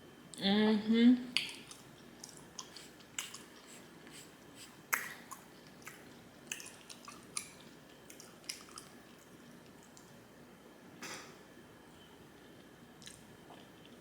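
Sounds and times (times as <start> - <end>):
person chewing with wet mouth smacks: 1.4 - 10.2, 13.0 - 14.0.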